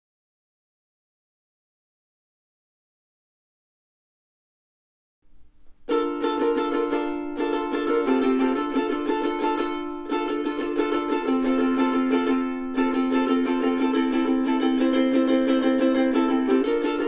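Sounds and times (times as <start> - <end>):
ukulele strumming chords: 5.2 - 17.0.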